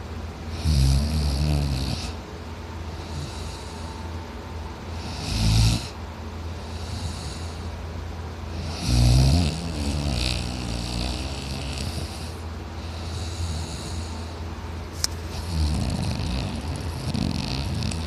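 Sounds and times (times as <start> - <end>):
steady low hum: 0.0 - 18.0
man snoring heavily: 0.5 - 2.2, 2.9 - 4.1, 4.9 - 7.7, 8.5 - 14.4, 15.3 - 18.0
quiet breathing: 2.8 - 8.8, 9.6 - 18.0.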